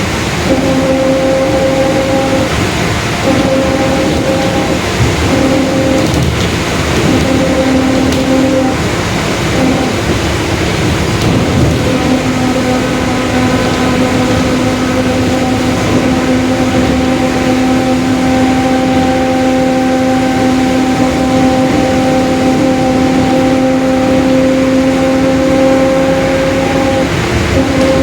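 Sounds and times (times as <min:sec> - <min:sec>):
bus engine and road noise: 0:00.0 - 0:28.0
differential whine: 0:00.0 - 0:28.0.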